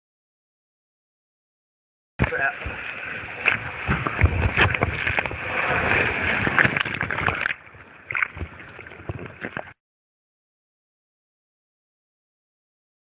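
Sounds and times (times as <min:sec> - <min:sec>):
water rushing through slide tube: 0:02.2 - 0:09.8.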